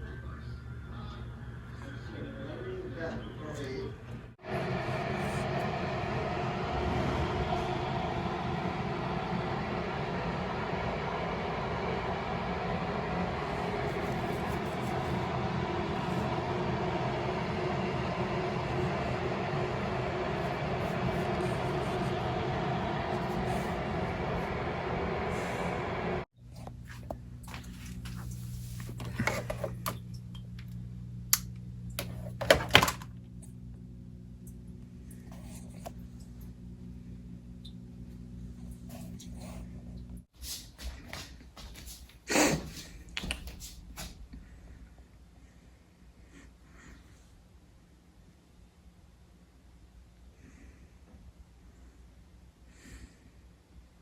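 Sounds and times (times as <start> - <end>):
low rumbling with faint hum: 0.0 - 40.3.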